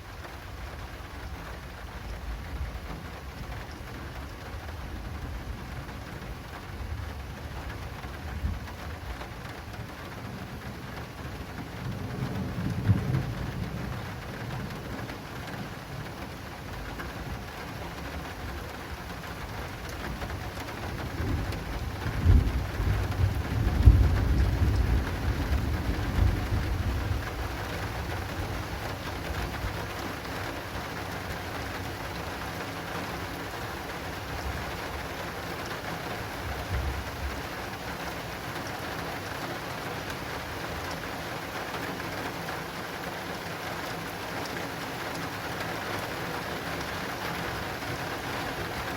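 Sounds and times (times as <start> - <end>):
heavy rain on an awning: 0.0 - 48.9
thunder rumbling: 11.4 - 16.2, 20.2 - 30.1, 36.2 - 38.1.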